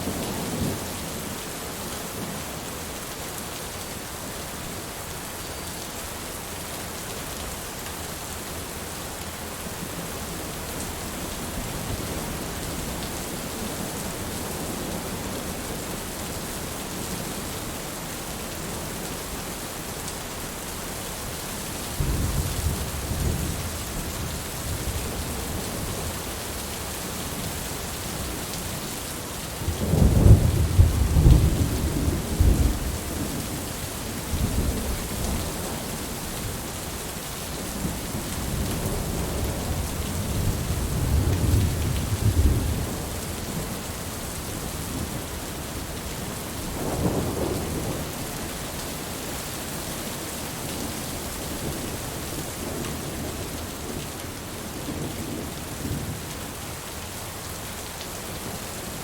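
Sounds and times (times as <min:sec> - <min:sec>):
heavy rain: 0:00.0 - 0:59.0
thunder rumbling: 0:46.6 - 0:48.4.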